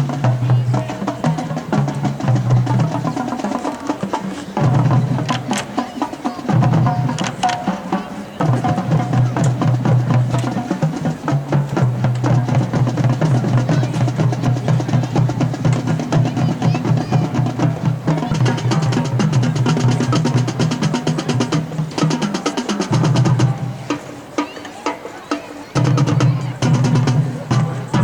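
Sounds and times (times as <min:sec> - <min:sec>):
drumline playing rapid drum strokes: 0:00.0 - 0:28.0.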